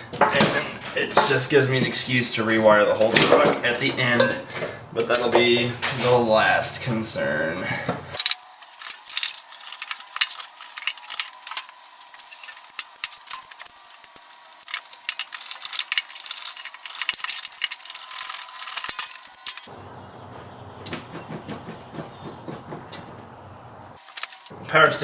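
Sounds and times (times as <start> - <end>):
metal tools clinking and rattling: 0.0 - 6.2, 8.2 - 19.8.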